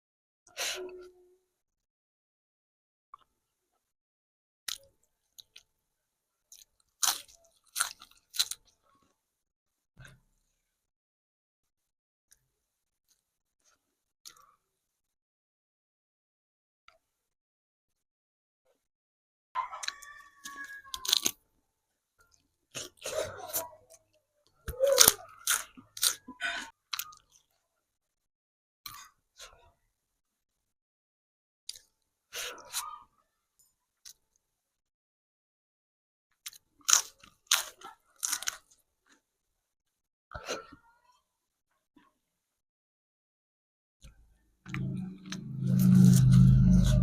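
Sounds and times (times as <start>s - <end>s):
crunchy biting and chewing of food: 6.5s - 9.1s, 19.7s - 21.4s, 24.7s - 27.5s, 36.4s - 39.2s, 44.7s - 47.0s.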